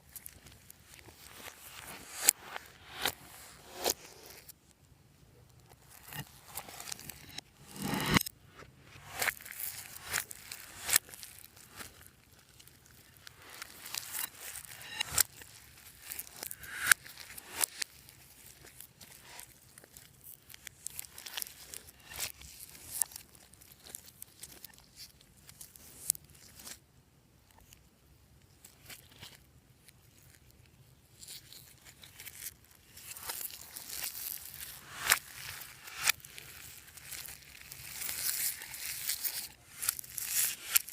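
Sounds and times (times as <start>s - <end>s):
slime crackling and popping: 9.1s - 24.8s, 31.4s - 40.9s.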